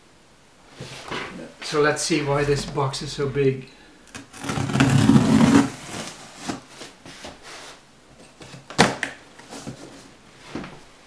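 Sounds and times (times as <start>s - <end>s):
packing material rustling: 4.1s - 7.0s
cardboard box scraping rustle: 4.3s - 7.8s.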